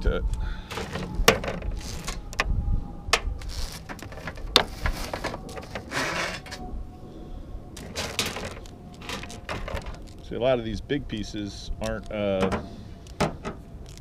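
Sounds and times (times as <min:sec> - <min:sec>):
wire scraping in metal sheathing: 0:00.7 - 0:02.4, 0:03.4 - 0:06.6, 0:07.8 - 0:10.3.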